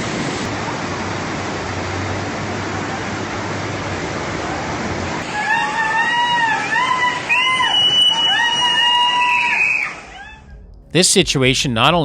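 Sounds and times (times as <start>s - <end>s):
low steady hum: 9.9s - 12.0s.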